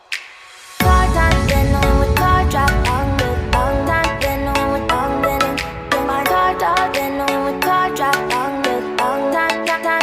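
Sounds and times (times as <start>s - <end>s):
melody over a quick beat: 0.8s - 8.3s.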